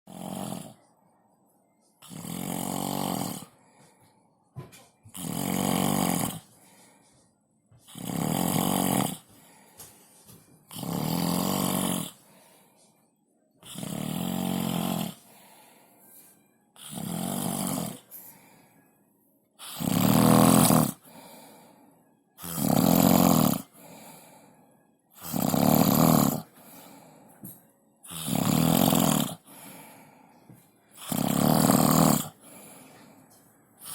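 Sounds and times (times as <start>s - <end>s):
person snoring: 0.1s - 0.8s, 2.0s - 3.6s, 5.1s - 6.6s, 7.8s - 9.5s, 10.7s - 12.6s, 13.6s - 15.8s, 16.8s - 18.5s, 19.6s - 21.8s, 22.4s - 24.6s, 25.2s - 27.2s, 28.0s - 30.4s, 31.0s - 33.9s.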